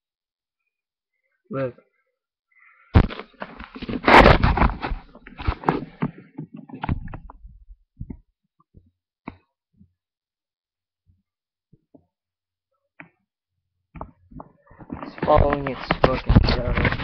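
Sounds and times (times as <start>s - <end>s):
rustling and bumping on microphone: 2.9s - 8.9s, 13.9s - 17.0s.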